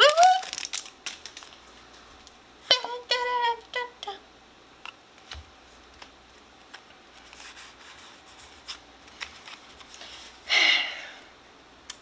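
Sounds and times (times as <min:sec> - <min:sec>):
cards rustling: 0:00.0 - 0:01.8, 0:05.2 - 0:10.4
card pack crinkling: 0:00.0 - 0:02.3.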